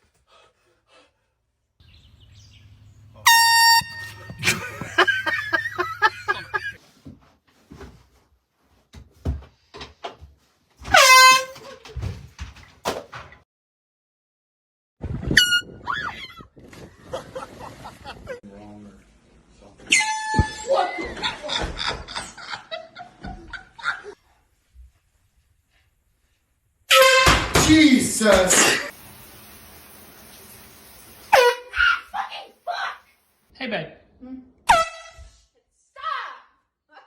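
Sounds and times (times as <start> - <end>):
air horn blasts: 3.2 - 5.4, 10.9 - 11.6, 26.9 - 27.7, 31.3 - 31.8
bursts of laughter: 4.1 - 6.8, 20.6 - 24.2.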